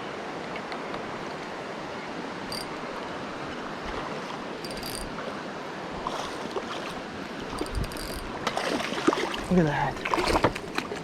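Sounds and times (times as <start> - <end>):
river rushing: 0.0 - 11.0
faint clicks and splashes: 6.1 - 11.0.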